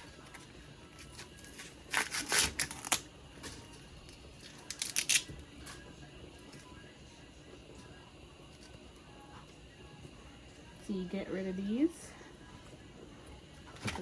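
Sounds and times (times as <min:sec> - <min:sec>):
corn husks tearing: 0:01.0 - 0:03.6, 0:04.5 - 0:05.8.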